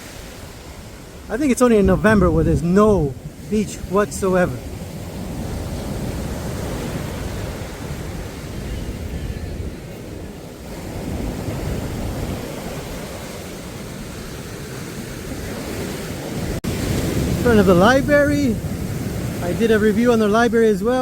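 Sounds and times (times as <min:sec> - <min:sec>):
sea waves washing on beach: 0:00.0 - 0:21.0
wind rumbling on microphone: 0:00.0 - 0:21.0.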